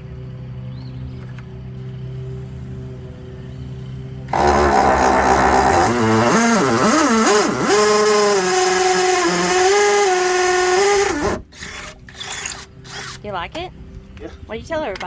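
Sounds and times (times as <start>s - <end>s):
cordless drill motor whine: 4.2s - 13.2s.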